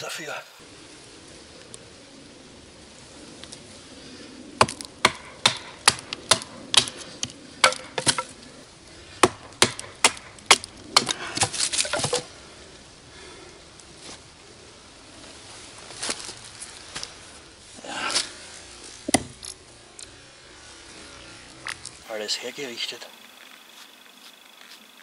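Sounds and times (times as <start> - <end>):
knife chopping dry wood: 4.6 - 8.4, 9.2 - 12.3, 19.1 - 19.4.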